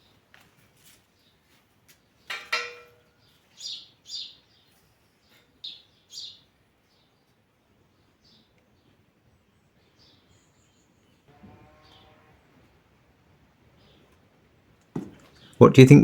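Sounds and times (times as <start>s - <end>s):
sharp metallic clank: 2.3s - 3.0s
small bird chirps: 3.2s - 7.3s.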